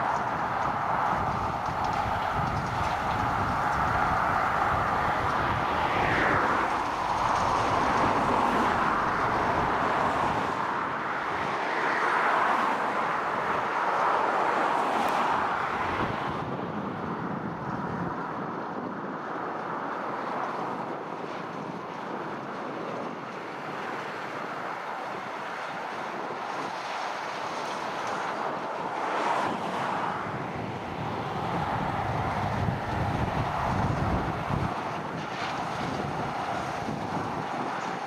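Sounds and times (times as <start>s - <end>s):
tractor rumbling: 0.0s - 11.4s, 30.3s - 38.0s.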